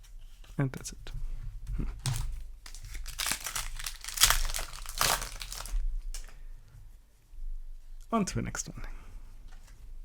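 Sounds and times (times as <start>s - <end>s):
foil wrapper crinkling: 2.1s - 6.2s.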